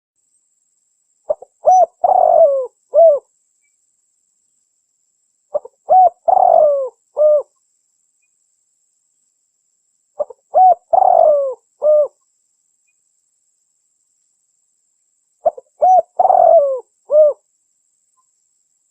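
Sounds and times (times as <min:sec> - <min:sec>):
dove cooing: 0:01.3 - 0:03.3, 0:05.5 - 0:07.5, 0:10.2 - 0:12.2, 0:15.4 - 0:17.4.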